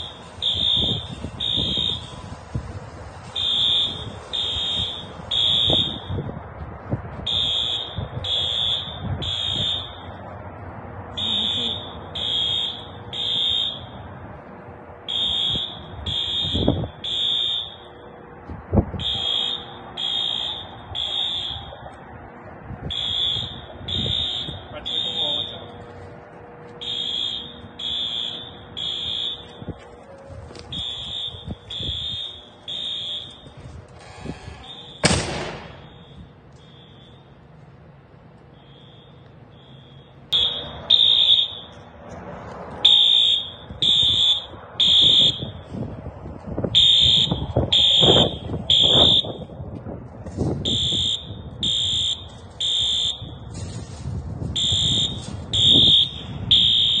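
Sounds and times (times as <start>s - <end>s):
fire alarm beeps: 0.0s - 2.6s, 3.2s - 6.4s, 7.2s - 10.3s, 11.2s - 14.1s, 15.1s - 18.2s, 18.9s - 22.0s, 22.9s - 25.9s, 26.8s - 37.6s, 38.4s - 41.9s, 42.8s - 45.8s, 46.7s - 49.5s, 50.5s - 57.0s
sharp bang: 35.0s - 36.0s.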